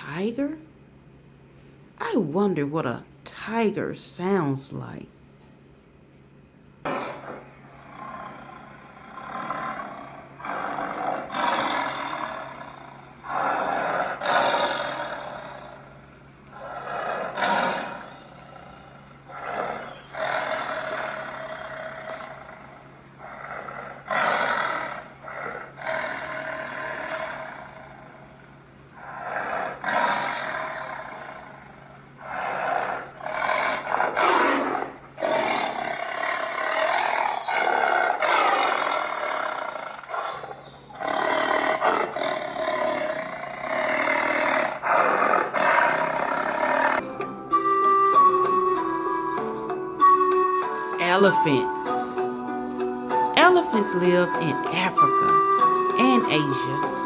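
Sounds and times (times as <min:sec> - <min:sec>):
tiger roaring and growling: 0:06.8 - 0:47.2.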